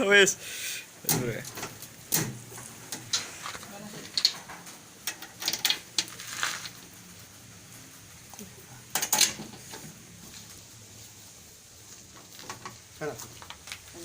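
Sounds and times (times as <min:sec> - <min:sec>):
crackers rattling together: 0:01.0 - 0:07.2, 0:08.3 - 0:10.6, 0:12.0 - 0:14.0.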